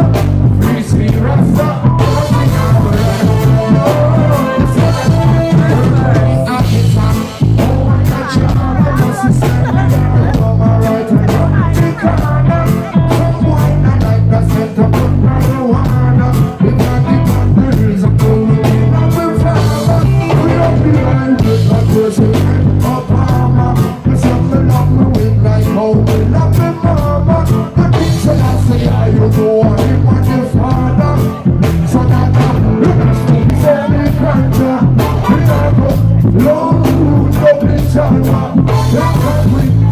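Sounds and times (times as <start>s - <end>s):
live reggae band playing: 0.0s - 39.9s.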